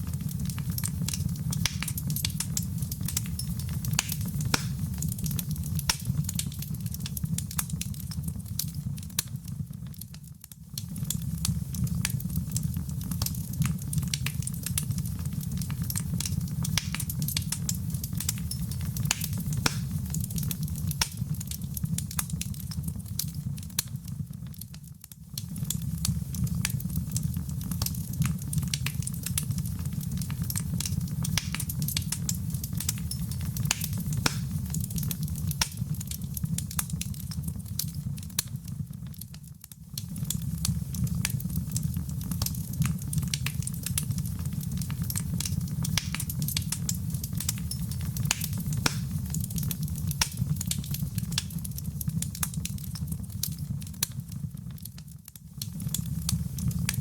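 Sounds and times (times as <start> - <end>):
fireplace fire crackling: 0.0 - 57.0.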